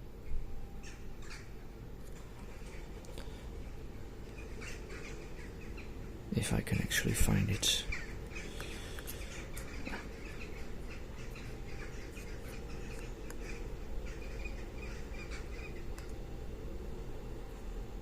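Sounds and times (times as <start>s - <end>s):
bird chirps: 7.5s - 16.0s.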